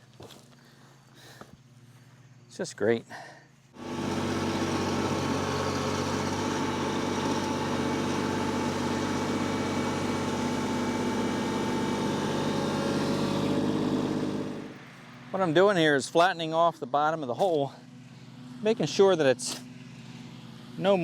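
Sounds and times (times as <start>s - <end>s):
tractor diesel engine running: 3.8s - 16.1s.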